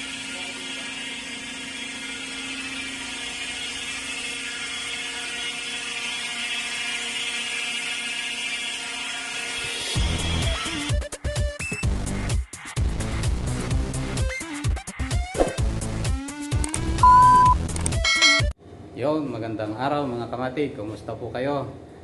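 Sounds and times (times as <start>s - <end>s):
transmission whine: 0.0s - 9.7s, 16.6s - 18.5s.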